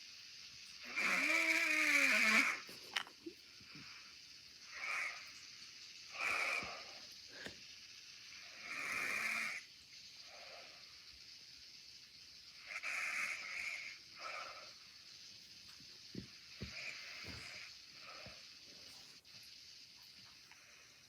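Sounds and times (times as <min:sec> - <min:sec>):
man snoring: 0:00.8 - 0:02.7, 0:08.5 - 0:09.6.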